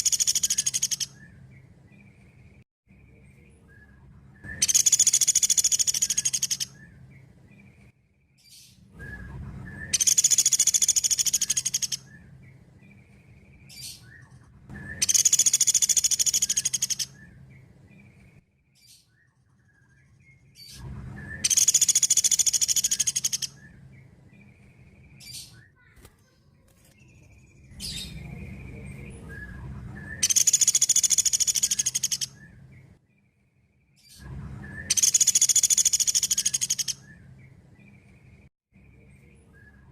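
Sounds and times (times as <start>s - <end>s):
woodpecker rapid trills: 0.0s - 1.2s, 4.5s - 6.8s, 9.9s - 12.2s, 14.8s - 17.3s, 21.4s - 23.7s, 30.0s - 32.4s, 34.8s - 37.2s.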